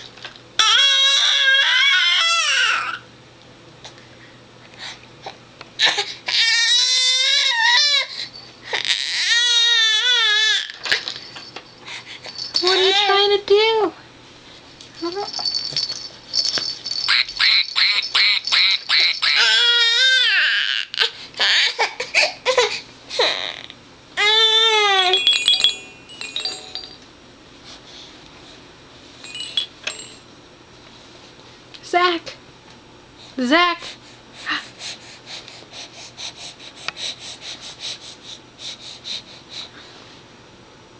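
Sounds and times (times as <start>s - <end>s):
baby squealing and babbling: 17.1s - 21.8s.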